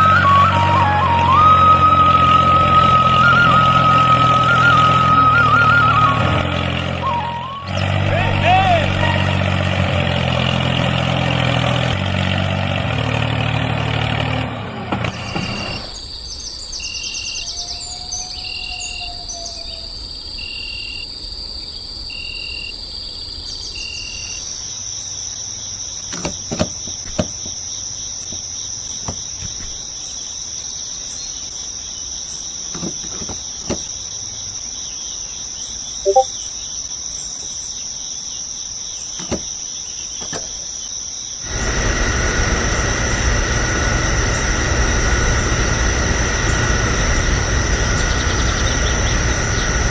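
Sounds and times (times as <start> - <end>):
crickets chirring: 15.2 - 41.5, 46.1 - 49.9.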